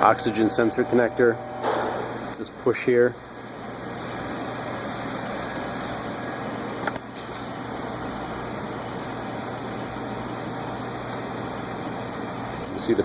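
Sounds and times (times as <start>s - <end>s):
background hum and hiss: 0.0s - 13.0s.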